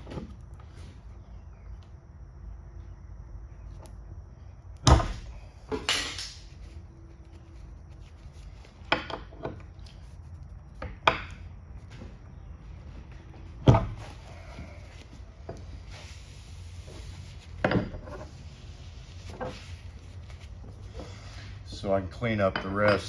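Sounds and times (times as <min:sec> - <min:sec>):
wood and tools knocking on workbench: 0:13.6 - 0:14.1, 0:17.6 - 0:18.3.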